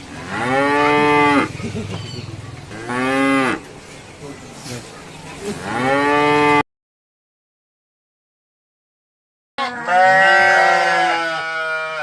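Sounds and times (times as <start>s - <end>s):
cow mooing: 0.2s - 1.5s, 2.7s - 3.6s, 9.6s - 12.0s.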